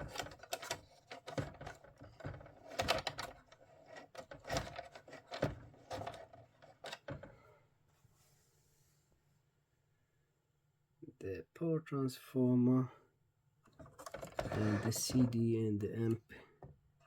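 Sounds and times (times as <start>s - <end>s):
plastic parts clicking and knocking: 0.0s - 7.4s, 13.7s - 15.4s.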